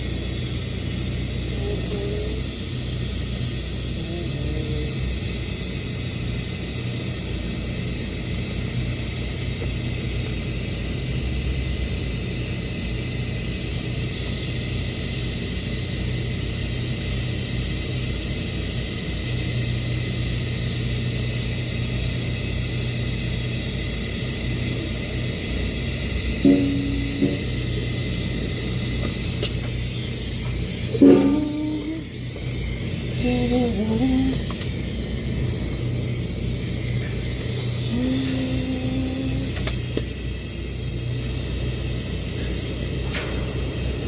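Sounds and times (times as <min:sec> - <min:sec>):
welding arc hissing: 0:00.0 - 0:44.0
low hum: 0:26.4 - 0:28.6, 0:30.7 - 0:34.6.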